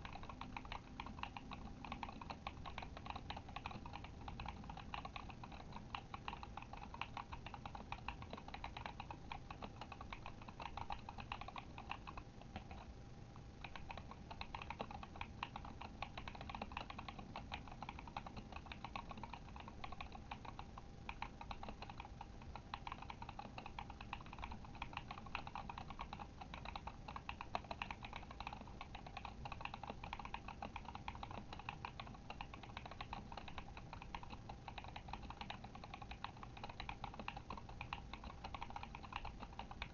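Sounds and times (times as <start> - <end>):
mechanical keyboard typing: 0.0 - 12.9, 13.6 - 39.9.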